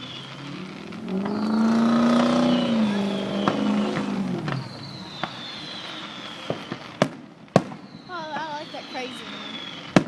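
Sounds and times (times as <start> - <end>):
high falling whistle: 0.0 - 0.5, 1.1 - 6.9
vehicle engine passing by: 0.0 - 6.2
firework cracks: 0.0 - 10.0.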